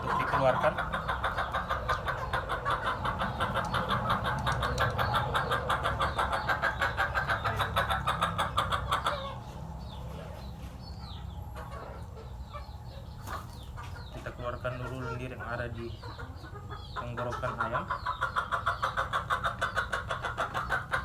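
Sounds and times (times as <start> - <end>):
chicken clucking: 0.0 - 21.0.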